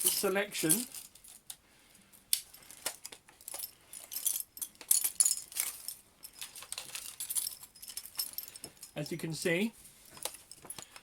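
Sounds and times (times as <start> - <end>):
metallic clicks and rattles: 2.3 - 9.2.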